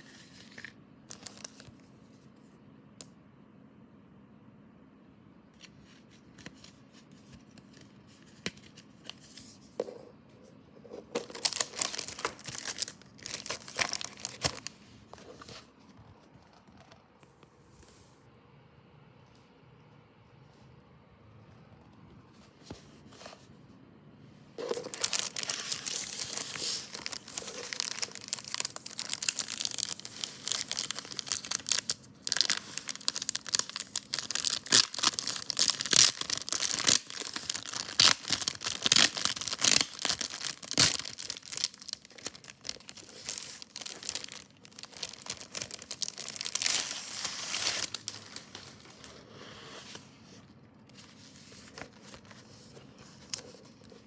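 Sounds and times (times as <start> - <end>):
packaging crinkling and tearing: 0.0 - 1.8, 11.0 - 14.8, 24.6 - 49.2, 51.0 - 54.0.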